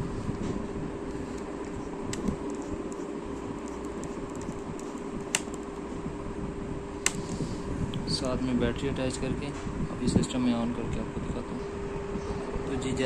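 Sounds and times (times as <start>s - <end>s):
steady hum: 0.0s - 13.0s
sharp plastic clicks: 2.1s - 5.8s.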